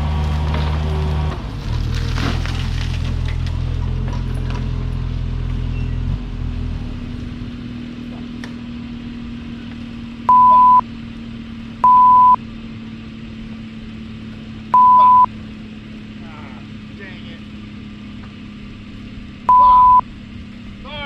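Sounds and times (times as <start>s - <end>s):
mini excavator engine: 0.0s - 21.0s
censor bleeps: 10.3s - 10.8s, 11.8s - 12.4s, 14.8s - 15.3s, 19.5s - 20.0s.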